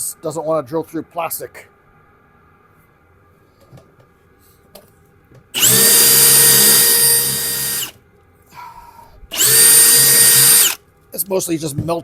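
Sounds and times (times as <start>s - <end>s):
power drill boring through plastic: 5.6s - 8.0s, 9.3s - 10.8s.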